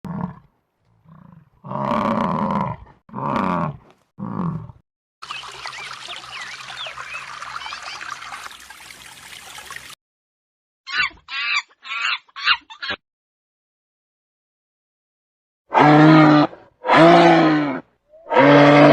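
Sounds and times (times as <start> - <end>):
big cat roaring: 0.1 - 4.8, 15.7 - 18.9
birds chirping: 5.2 - 9.9
rushing water: 5.2 - 10.0.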